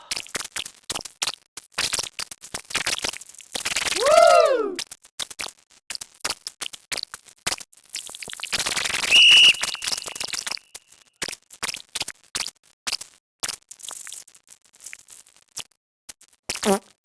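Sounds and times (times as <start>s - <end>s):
loud high-pitched beep: 9.1s - 10.3s.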